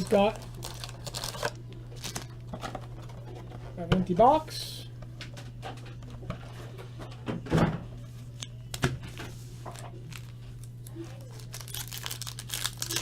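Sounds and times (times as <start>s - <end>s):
pack wrappers crinkling: 0.0s - 3.1s, 9.7s - 13.0s.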